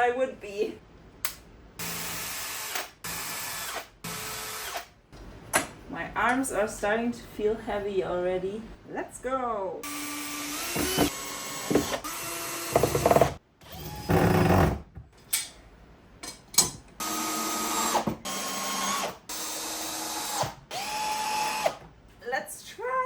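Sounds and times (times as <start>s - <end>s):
cordless drill driving screws: 9.9s - 14.7s, 17.0s - 21.8s.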